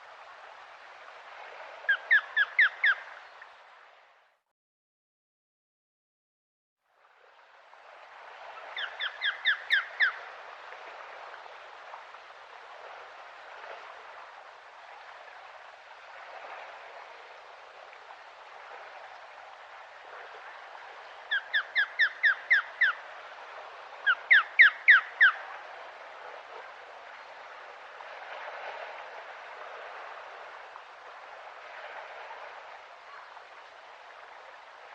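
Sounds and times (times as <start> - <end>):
osprey calling: 1.9 - 3.4, 8.6 - 10.3, 21.3 - 23.1, 24.0 - 25.6.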